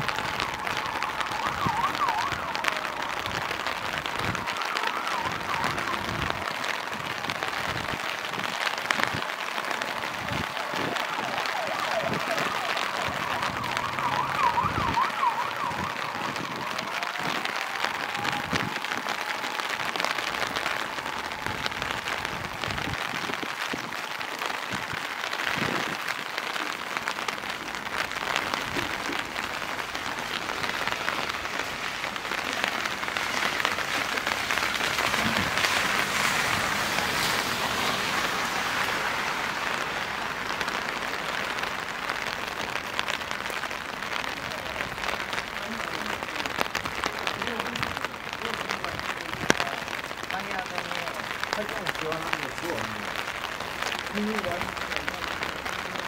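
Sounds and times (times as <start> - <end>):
siren warbling: 0.0 - 7.3, 10.0 - 23.2
rain hissing on street: 0.0 - 56.0.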